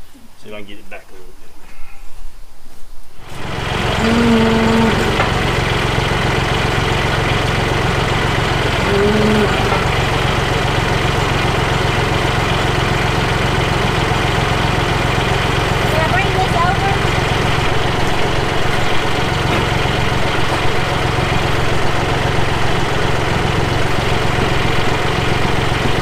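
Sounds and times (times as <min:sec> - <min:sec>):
tractor engine running: 0:03.2 - 0:26.0
short hoot-like tone: 0:04.0 - 0:05.4.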